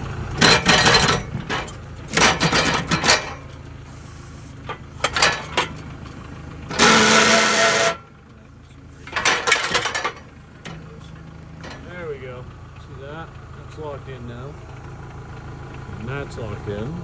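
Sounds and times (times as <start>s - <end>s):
metal scraping rush: 0.0s - 8.2s, 9.0s - 12.3s
metal clanking and rattling: 0.0s - 14.1s
tractor engine running: 0.0s - 17.0s.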